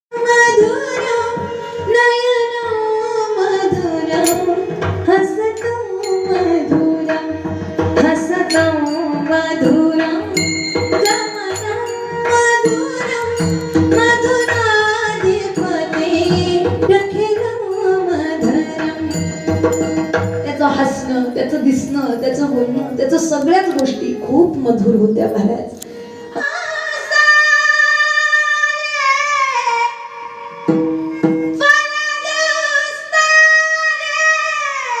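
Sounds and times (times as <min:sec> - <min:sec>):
woman singing: 0:00.1 - 0:19.8, 0:20.4 - 0:30.8, 0:31.6 - 0:35.0
hand drum beat: 0:03.8 - 0:24.0.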